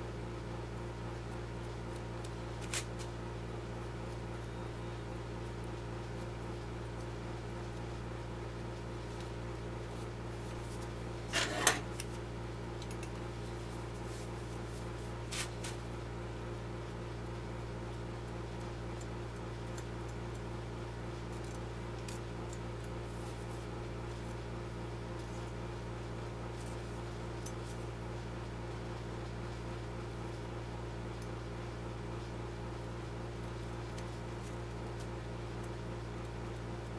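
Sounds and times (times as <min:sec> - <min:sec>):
steady electrical hum: 0:00.0 - 0:36.9.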